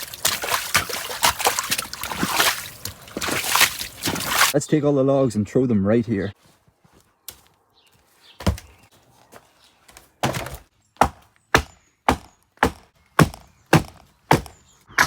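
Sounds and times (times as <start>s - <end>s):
logs thrown onto a pile: 8.4s - 10.7s.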